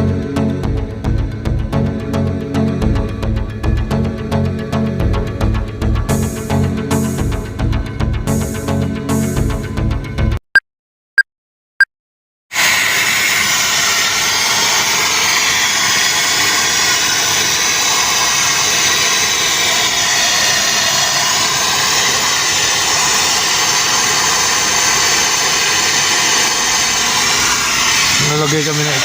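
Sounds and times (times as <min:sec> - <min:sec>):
air rushing from hvac equipment: 0:12.6 - 0:29.0.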